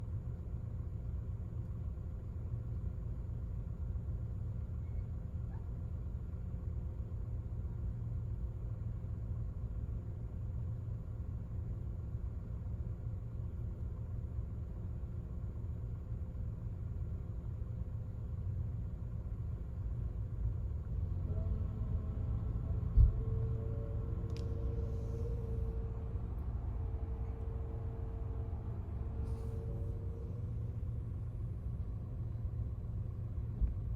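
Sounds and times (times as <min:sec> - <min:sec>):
car engine idling: 0:06.0 - 0:33.9.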